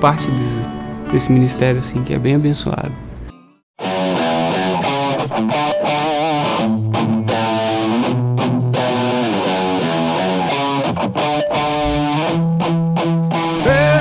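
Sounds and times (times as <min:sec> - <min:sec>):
electric guitar sustained notes: 0:00.0 - 0:14.0
rock band instrumental: 0:03.8 - 0:14.0.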